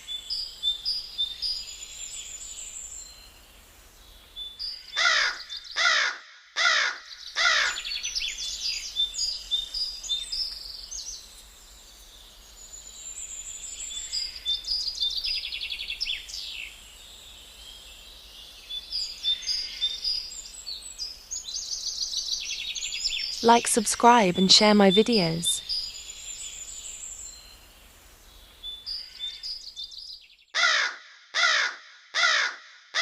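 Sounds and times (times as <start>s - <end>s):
crow cawing: 5.0s - 7.8s, 30.6s - 33.0s.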